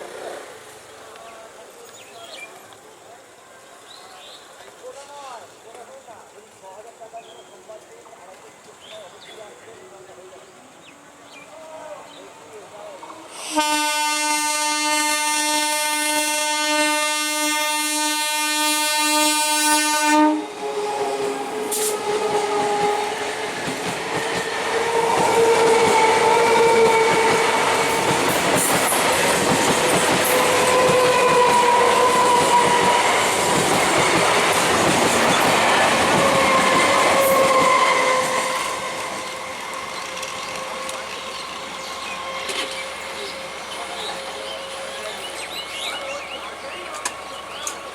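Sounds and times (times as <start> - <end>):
train wavering whine: 12.5 - 47.9
train horn blast: 13.3 - 23.3, 24.7 - 28.1, 30.3 - 33.1, 36.1 - 39.7
train wheels rattling: 20.6 - 47.9.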